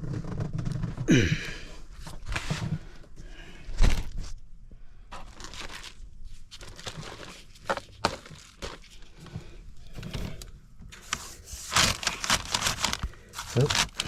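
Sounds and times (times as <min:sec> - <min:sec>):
scraping rustles: 0:05.2 - 0:14.0.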